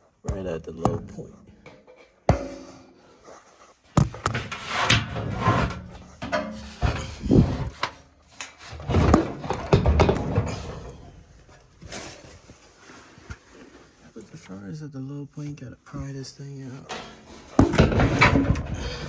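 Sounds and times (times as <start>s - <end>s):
parts scraping and rubbing: 1.6s - 14.4s, 16.7s - 19.0s
sharp knocks: 2.3s - 2.9s.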